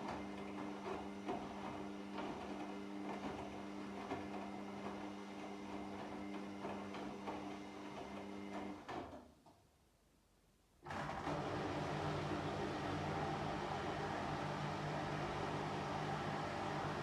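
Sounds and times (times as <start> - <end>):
washing machine drum motor humming: 10.9 - 17.0.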